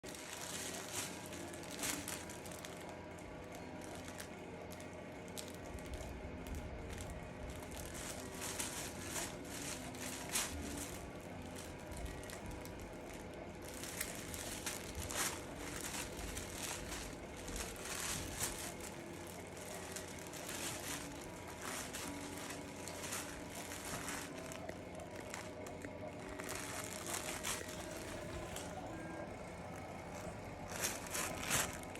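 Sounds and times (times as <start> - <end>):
book pages rustling: 0.0 - 6.1, 6.8 - 31.9.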